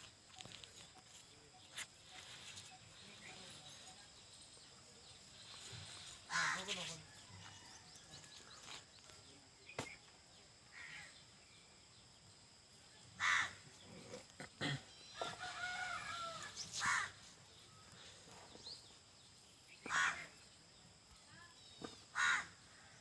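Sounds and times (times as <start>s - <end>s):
harsh caw-like bird calls: 13.2s - 13.6s, 15.2s - 17.2s, 19.8s - 20.4s, 22.1s - 22.7s.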